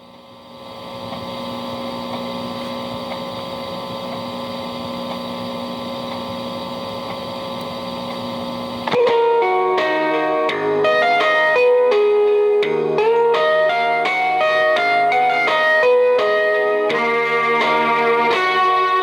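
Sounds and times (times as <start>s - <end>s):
steady low hum: 0.0s - 19.0s
guitar music: 8.9s - 19.0s.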